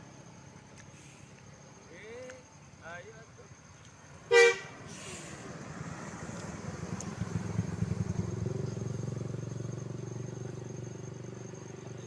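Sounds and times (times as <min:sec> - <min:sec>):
vehicle engine running: 0:04.0 - 0:12.0.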